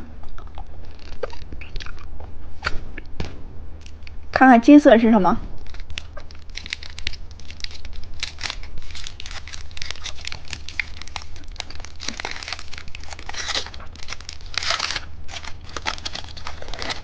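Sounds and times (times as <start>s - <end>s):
steady low hum: 0.0s - 17.0s
candy wrapper crinkling: 0.8s - 2.0s, 5.6s - 17.0s.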